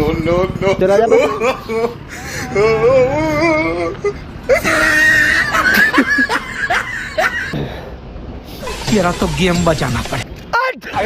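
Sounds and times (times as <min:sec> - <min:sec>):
person wailing: 0:01.1 - 0:05.6
loud harsh cry with squeals: 0:08.5 - 0:10.2.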